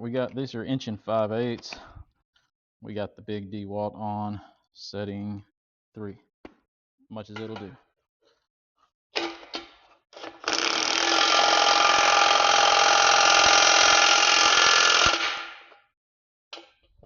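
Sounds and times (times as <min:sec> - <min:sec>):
impact wrench hammering: 0:10.4 - 0:15.7.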